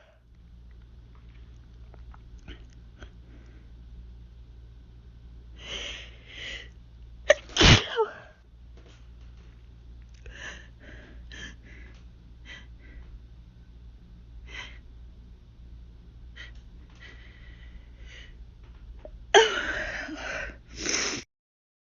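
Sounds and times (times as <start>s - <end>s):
loud sneeze: 7.3s - 8.2s
loud burst of breath: 20.2s - 21.2s
faint sniffs and breaths: 20.6s - 21.2s.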